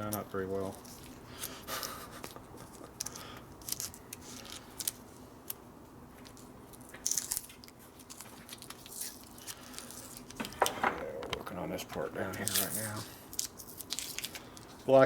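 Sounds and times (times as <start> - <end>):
masking tape ripping and crinkling: 2.6 - 5.0, 6.2 - 10.6, 12.2 - 14.7.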